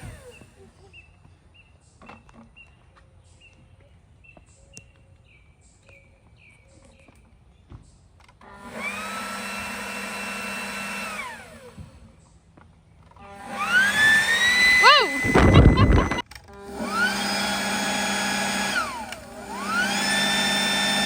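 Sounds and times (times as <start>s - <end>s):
leaf blower motor whine: 0.0s - 0.9s, 8.4s - 12.1s, 13.1s - 21.0s.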